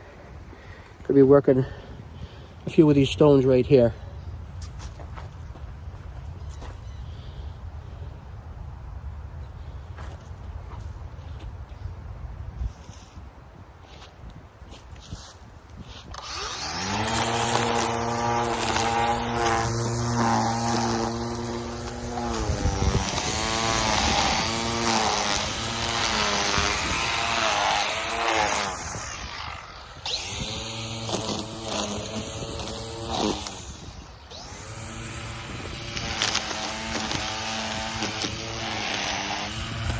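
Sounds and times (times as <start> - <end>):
small gas engine revving: 16.1 - 39.9.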